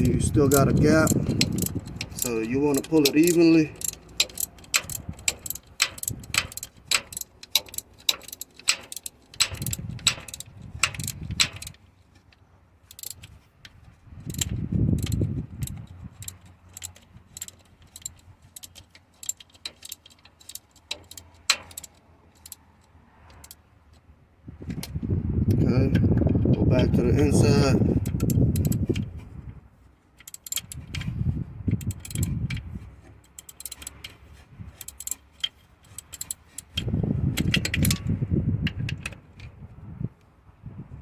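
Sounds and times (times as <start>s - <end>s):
ratchet wrench clicking: 0.0s - 11.8s, 12.9s - 23.6s, 25.5s - 29.2s, 30.2s - 39.5s
low rumbles: 0.0s - 12.2s, 12.8s - 19.2s, 30.5s - 41.0s.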